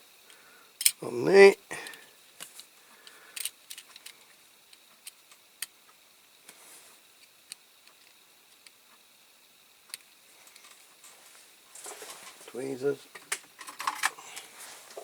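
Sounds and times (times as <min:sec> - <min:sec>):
clicks of small parts and tools: 0:00.8 - 0:01.0, 0:01.8 - 0:05.7, 0:13.3 - 0:14.2.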